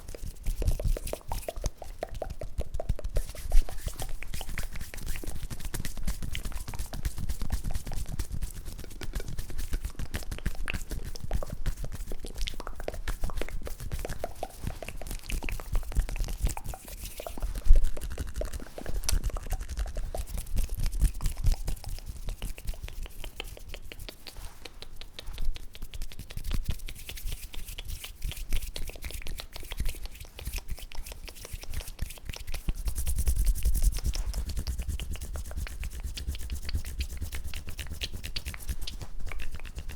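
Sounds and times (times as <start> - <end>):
soft crackling clicks and smacks: 0.0 - 7.0, 8.4 - 32.8, 36.4 - 39.9.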